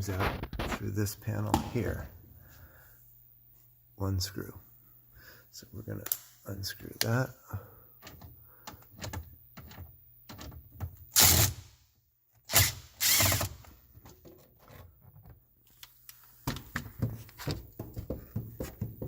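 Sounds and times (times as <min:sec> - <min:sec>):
handling knocks and clicks: 0:01.4 - 0:02.1.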